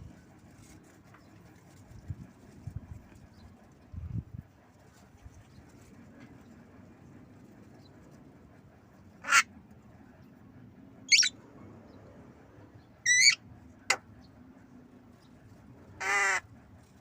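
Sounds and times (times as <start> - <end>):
myna bird harsh calls: 11.1 - 11.4, 13.1 - 13.4.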